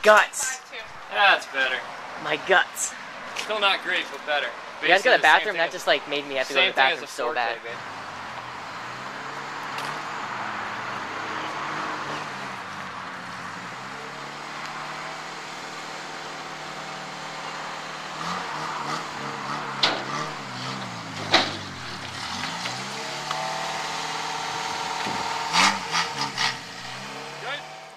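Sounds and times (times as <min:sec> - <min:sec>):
car engine revving: 0:07.6 - 0:27.9
sharp clicks or knocks: 0:19.8 - 0:23.4.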